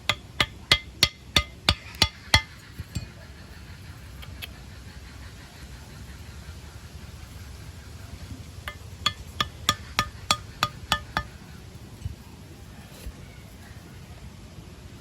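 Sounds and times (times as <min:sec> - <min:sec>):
sharp knocks: 0:00.0 - 0:03.1, 0:08.7 - 0:11.4.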